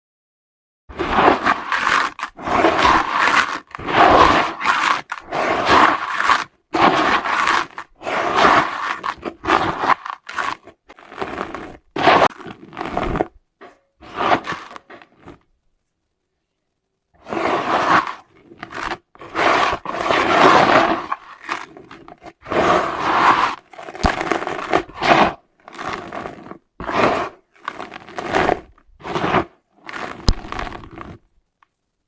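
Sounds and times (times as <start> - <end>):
dry dirt crumbling: 0.9 - 15.4, 17.4 - 31.2.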